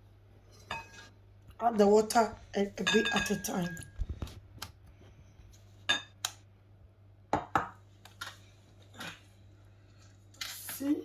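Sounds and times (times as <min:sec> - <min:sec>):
utensils clinking against mixing bowl: 0:02.8 - 0:03.9.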